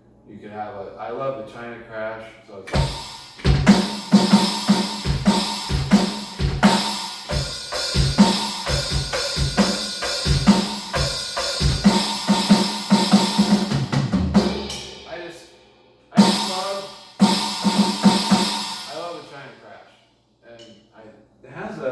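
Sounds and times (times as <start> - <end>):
electronic drum kit beat: 2.7 - 15.4, 16.2 - 19.2.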